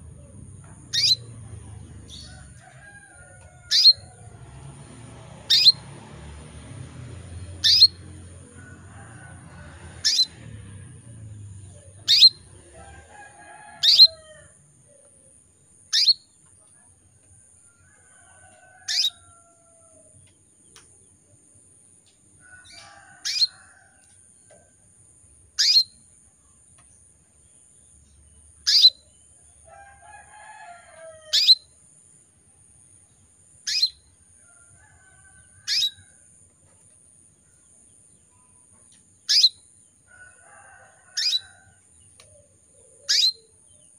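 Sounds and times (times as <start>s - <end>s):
canary high-pitched tweets: 0.4s - 1.4s, 3.6s - 4.1s, 5.5s - 5.8s, 7.4s - 8.2s, 10.0s - 10.4s, 11.9s - 12.7s, 13.7s - 14.3s, 15.9s - 16.3s, 18.8s - 19.5s, 22.6s - 23.7s, 25.6s - 26.1s, 28.6s - 29.3s, 31.3s - 31.8s, 33.6s - 34.1s, 35.4s - 36.1s, 39.2s - 39.7s, 41.0s - 41.6s, 43.0s - 43.9s.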